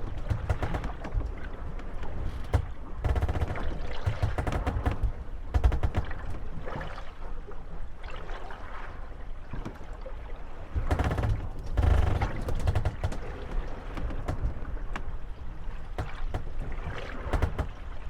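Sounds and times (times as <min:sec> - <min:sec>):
wooden hulls knocking and creaking: 0:00.0 - 0:06.8, 0:10.7 - 0:18.0.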